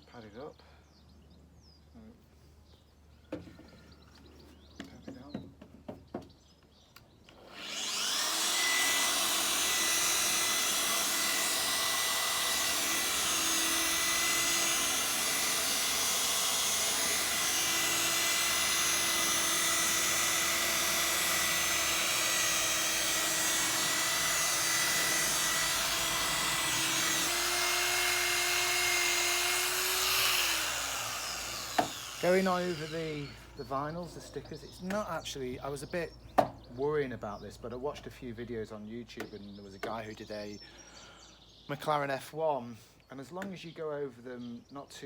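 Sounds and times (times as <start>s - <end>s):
electric polisher motor whine: 7.4s - 33.6s.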